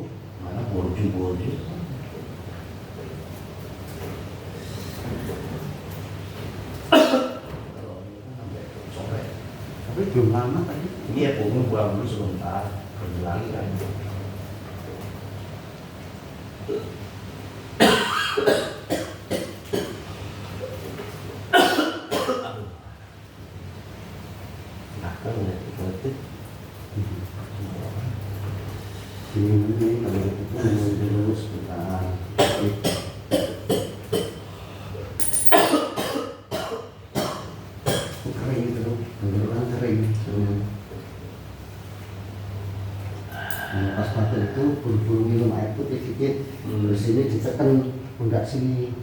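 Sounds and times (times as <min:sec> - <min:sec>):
person coughing: 0:06.9 - 0:07.5, 0:17.8 - 0:20.0, 0:21.6 - 0:22.6, 0:35.4 - 0:38.2.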